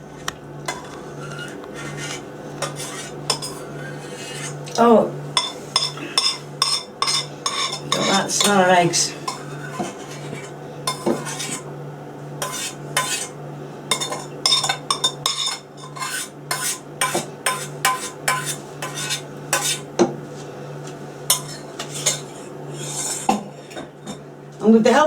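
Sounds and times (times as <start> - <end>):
low steady hum: 0.0 - 25.0
metal whisk clinking against bowl: 5.4 - 8.6.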